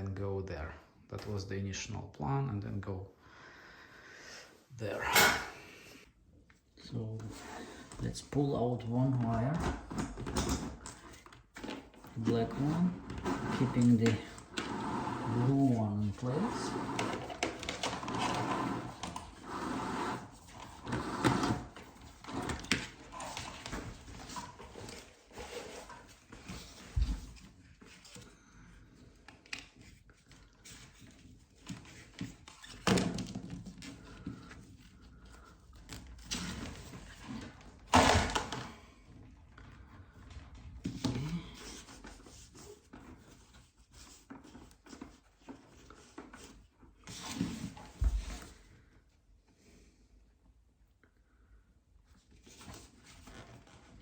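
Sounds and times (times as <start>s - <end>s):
wire scraping through conduit: 12.1s - 26.9s.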